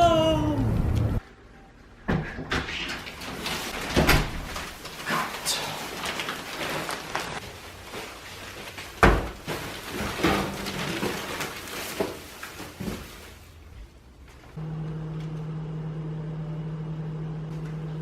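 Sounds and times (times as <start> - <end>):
objects knocking and clattering: 8.9 - 13.2.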